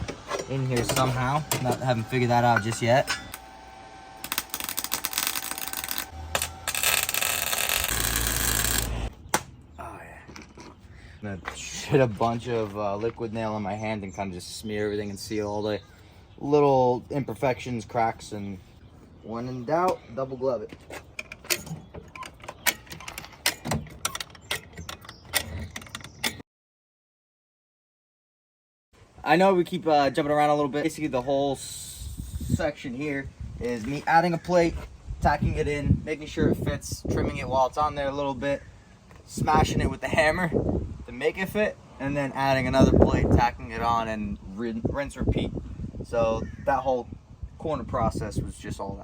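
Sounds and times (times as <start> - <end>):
welder arc crackling: 1.2 - 9.1.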